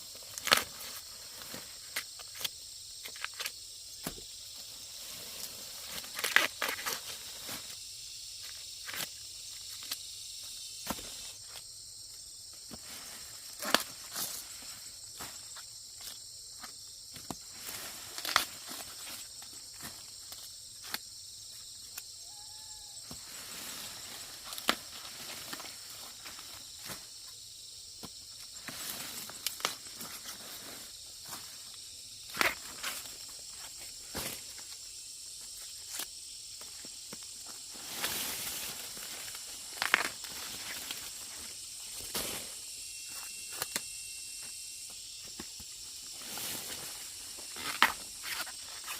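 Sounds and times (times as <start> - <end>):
sharp snaps and rustles: 0.2 - 4.2, 5.4 - 7.7, 8.4 - 10.1, 13.5 - 14.4, 18.1 - 21.0, 35.8 - 41.2
high-pitched insect chirring: 38.4 - 48.9.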